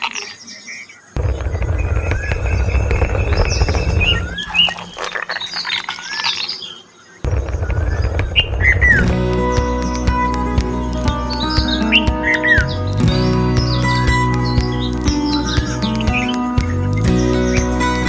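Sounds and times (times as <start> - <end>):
birds chirping: 0.0 - 18.0
loud pulsing low rumble: 1.2 - 5.0, 7.3 - 9.8.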